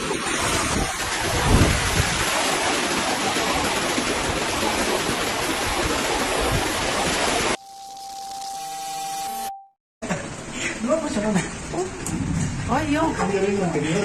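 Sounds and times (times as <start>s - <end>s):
floodwater rushing through street: 0.0s - 7.6s.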